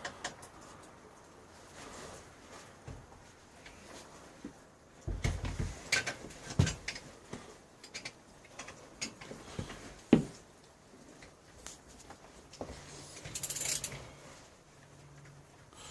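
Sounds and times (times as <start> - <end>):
metal tools clicking and knocking: 13.2 - 14.0.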